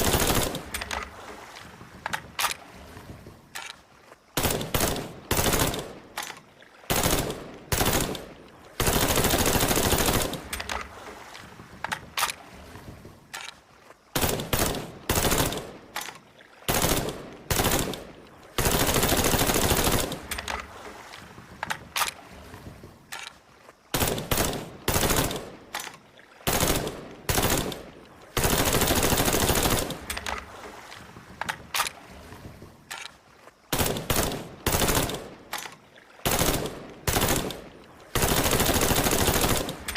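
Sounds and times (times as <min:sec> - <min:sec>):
rifle gunfire: 0:36.3 - 0:39.9.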